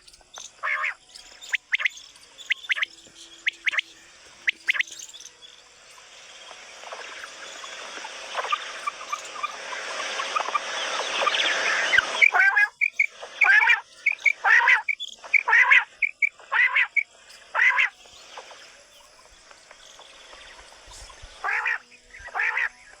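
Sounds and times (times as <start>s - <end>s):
quail calling: 0.6s - 1.0s, 6.8s - 18.6s, 21.4s - 22.8s.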